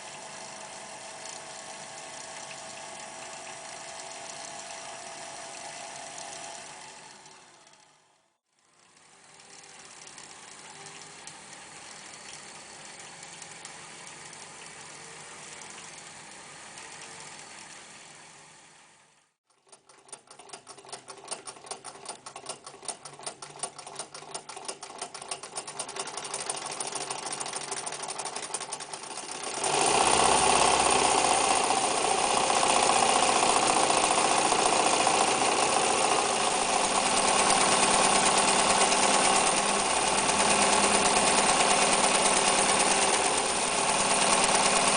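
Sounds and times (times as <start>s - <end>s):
sewing machine stitching: 19.5s - 44.9s.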